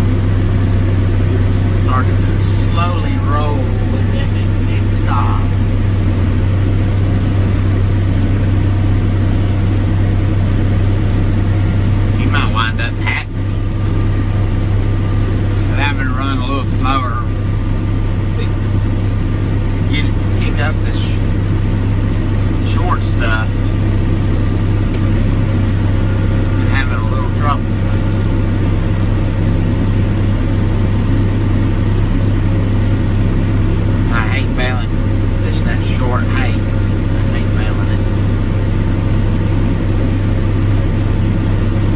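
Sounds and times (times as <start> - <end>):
tractor engine humming: 0.0 - 41.9.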